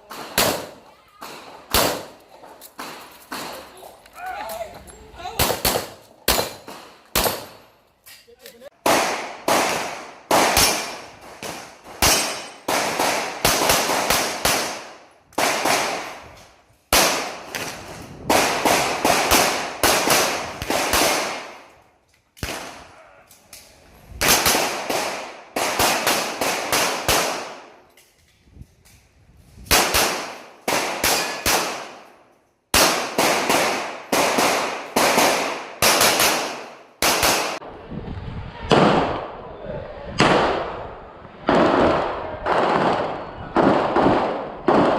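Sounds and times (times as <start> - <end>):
rapid pistol shots: 8.8 - 16.2, 29.7 - 32.0, 32.7 - 37.6.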